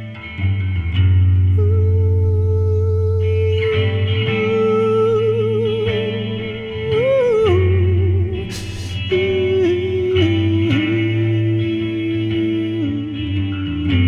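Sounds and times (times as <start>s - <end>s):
sliding lead guitar notes: 0.0s - 14.0s
cymbal-like hiss: 8.3s - 9.4s.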